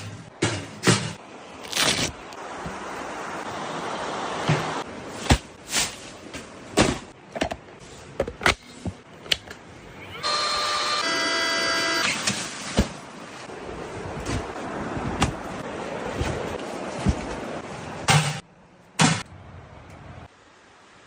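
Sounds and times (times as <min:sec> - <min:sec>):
small electric motor whining: 0:10.0 - 0:12.1.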